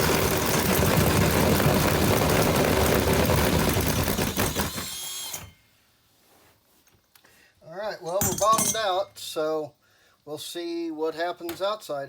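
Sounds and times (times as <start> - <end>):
power drill with hole saw grinding: 0.0 - 5.6.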